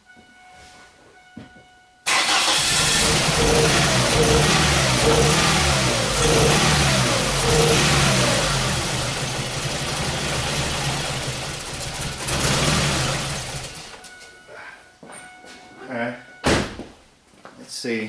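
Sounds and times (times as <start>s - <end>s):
car engine misfiring: 2.1s - 14.0s.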